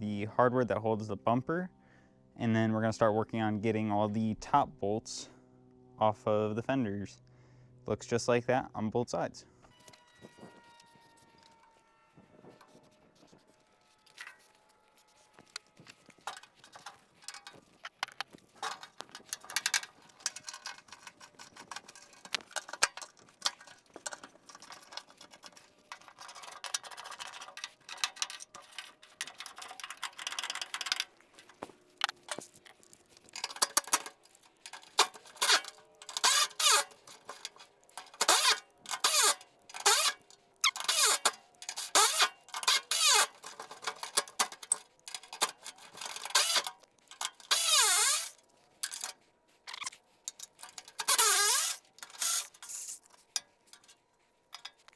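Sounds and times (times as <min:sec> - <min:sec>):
hand ratchet clicking: 0:16.2 - 0:53.9.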